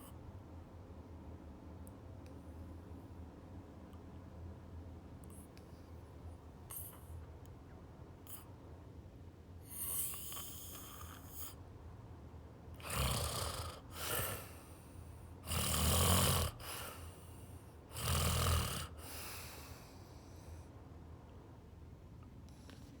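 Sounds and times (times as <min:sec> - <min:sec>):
person snoring: 0:12.8 - 0:14.6, 0:15.4 - 0:17.2, 0:17.9 - 0:19.8
hissing breaths: 0:12.8 - 0:15.7, 0:18.8 - 0:20.6.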